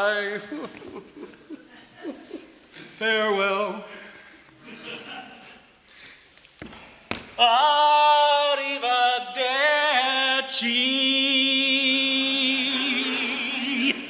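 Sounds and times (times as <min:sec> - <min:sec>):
male quartet singing in harmony: 0:07.4 - 0:14.0.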